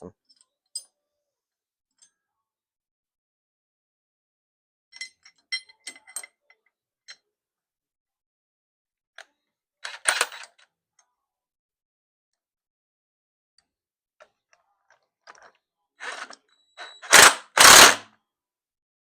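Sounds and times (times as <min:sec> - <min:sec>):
metal tools clinking: 0:04.9 - 0:06.4.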